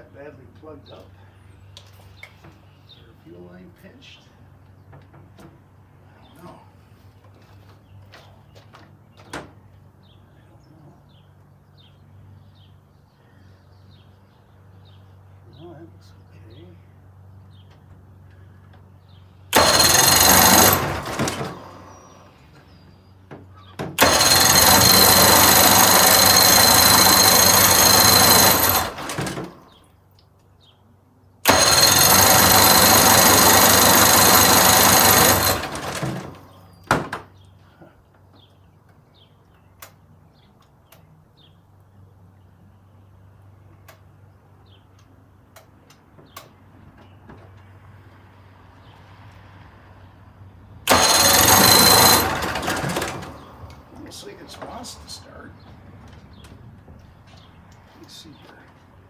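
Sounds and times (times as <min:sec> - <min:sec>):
outboard motor cranking: 0:18.8 - 0:29.9, 0:31.4 - 0:37.5, 0:50.8 - 0:58.2.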